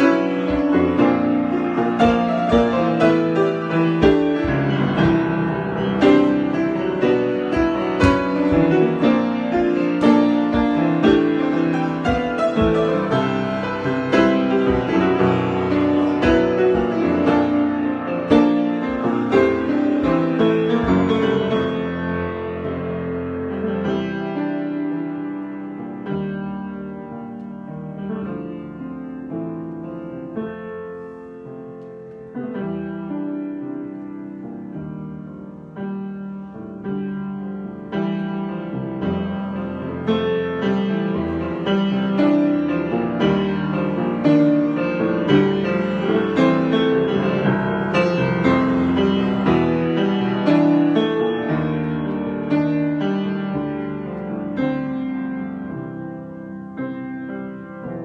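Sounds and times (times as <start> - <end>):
solo piano improvisation: 0.0 - 58.0.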